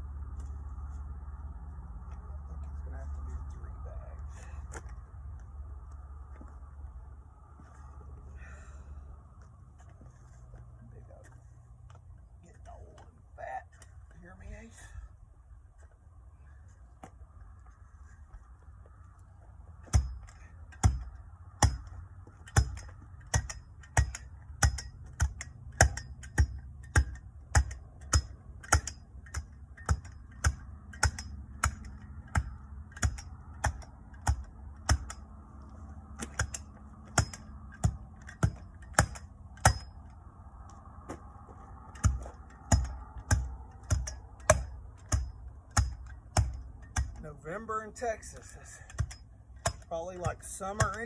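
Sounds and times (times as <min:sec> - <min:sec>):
tamping blows on asphalt: 0:19.7 - 0:47.2, 0:48.9 - 0:51.0.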